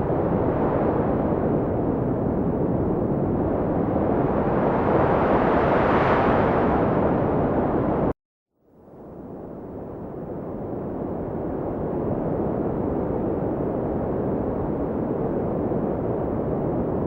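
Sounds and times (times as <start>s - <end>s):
sea waves roaring: 3.4s - 8.1s.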